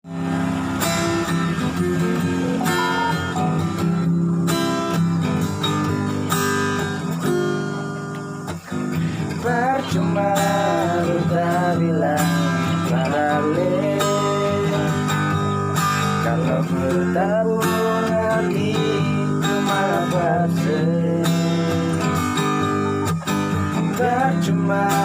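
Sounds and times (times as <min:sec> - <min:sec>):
acoustic guitar strumming chords: 0:00.0 - 0:25.0
wavering melody line: 0:01.9 - 0:04.2.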